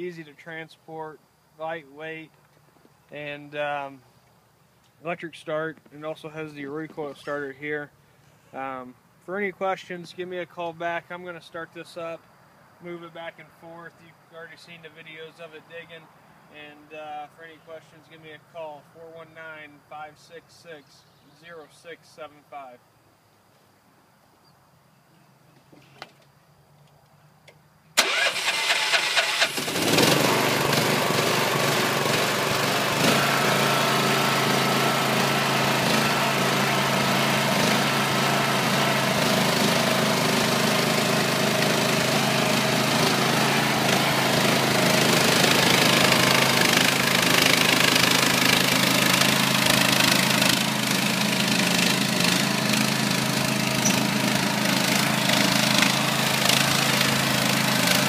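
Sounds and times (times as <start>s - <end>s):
engine cranking and running: 28.0s - 58.0s.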